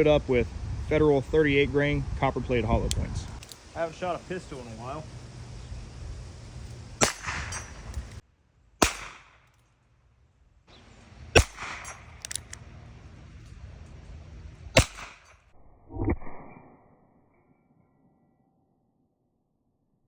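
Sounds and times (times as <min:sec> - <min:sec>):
revolver gunshots: 0:07.0 - 0:08.2, 0:08.8 - 0:09.5, 0:11.3 - 0:12.5, 0:14.7 - 0:15.4.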